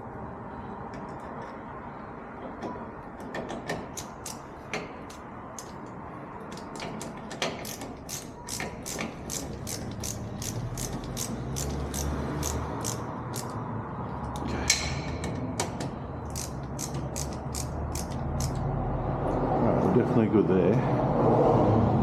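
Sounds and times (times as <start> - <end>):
ratchet screwdriver clicks: 6.5 - 13.6, 16.3 - 18.7.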